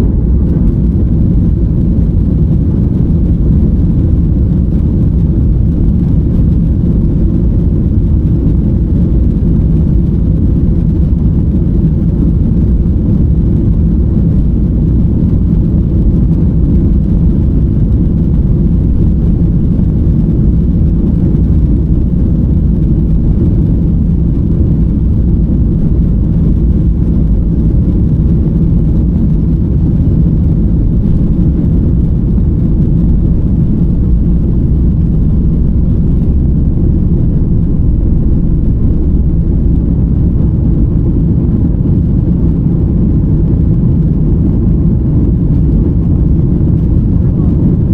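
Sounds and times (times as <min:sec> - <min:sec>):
airliner cabin noise: 0:00.0 - 0:47.9.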